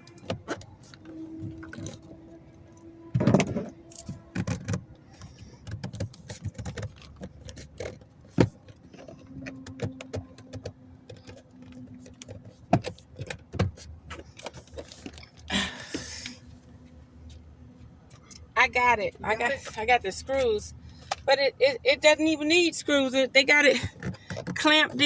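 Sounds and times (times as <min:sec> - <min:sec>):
plastic parts clicking and rattling: 0:02.8 - 0:16.3, 0:23.7 - 0:25.0.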